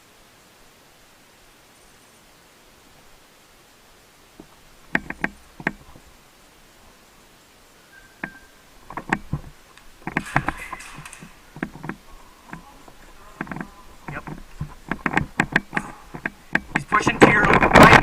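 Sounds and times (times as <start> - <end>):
rustling: 2.8 - 18.0
sharp clicks and knocks: 4.4 - 6.0, 8.2 - 18.0.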